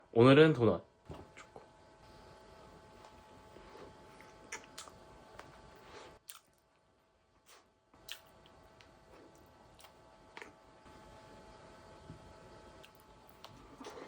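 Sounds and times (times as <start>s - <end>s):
biting and chewing donut: 7.4s - 10.6s.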